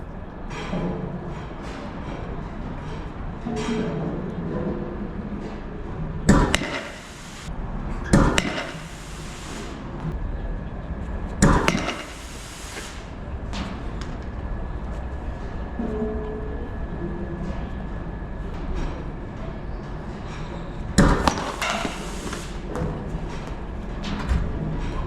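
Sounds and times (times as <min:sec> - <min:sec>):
baseballs striking hard: 0:06.3 - 0:07.5, 0:08.1 - 0:09.4, 0:11.4 - 0:14.3, 0:21.0 - 0:22.9.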